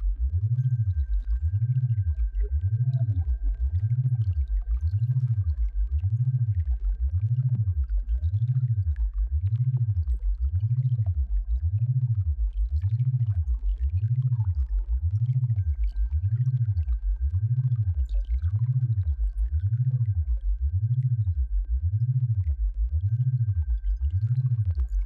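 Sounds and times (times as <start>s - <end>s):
low hum gliding up and down: 0.0s - 25.0s.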